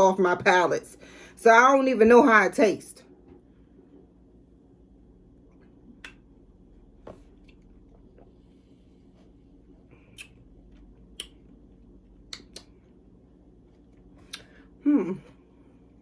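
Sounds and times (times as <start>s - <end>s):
low room hum: 0.0s - 16.0s
wet mouth clicks and lip smacks: 10.1s - 10.5s, 11.1s - 11.4s, 12.3s - 12.8s, 14.3s - 14.5s.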